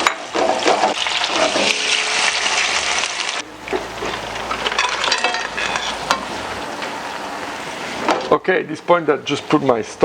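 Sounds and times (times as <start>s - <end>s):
food sizzling in a pan: 0.0s - 3.4s
utensils clinking on cookware: 3.7s - 6.3s.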